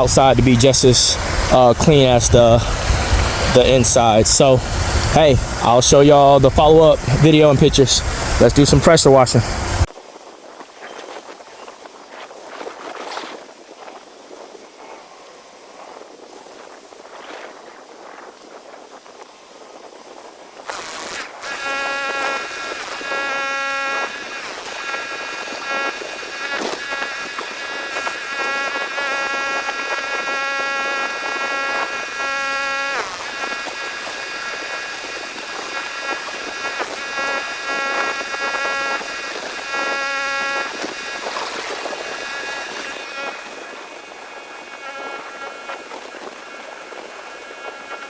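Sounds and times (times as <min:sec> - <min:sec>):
pump whining: 0:00.0 - 0:09.9, 0:20.7 - 0:48.0.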